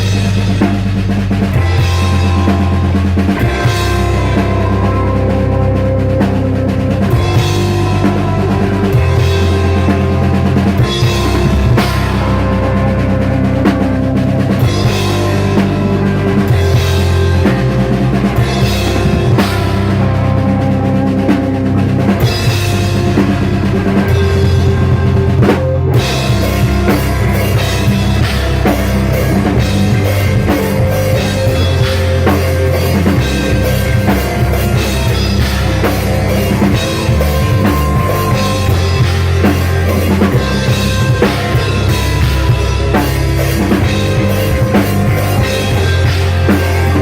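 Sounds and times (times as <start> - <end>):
band playing song: 0.0 - 47.0
bass drum and snare: 0.0 - 47.0
steady bass: 0.0 - 47.0.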